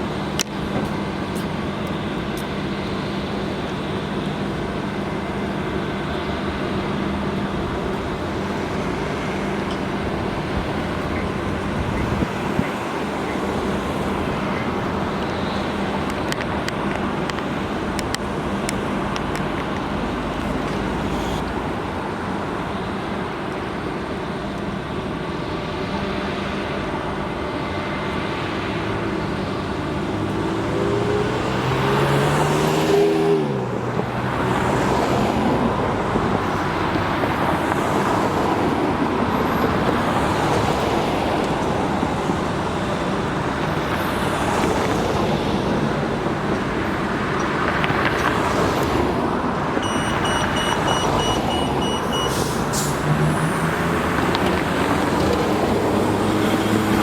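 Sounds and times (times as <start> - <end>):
road traffic: 0.0 - 57.0
vehicle engine passing by: 30.2 - 35.6, 51.1 - 57.0.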